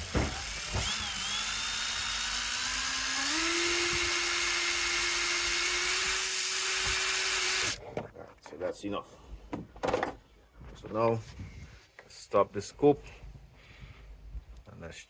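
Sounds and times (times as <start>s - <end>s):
power drill motor whine: 0.0s - 7.8s.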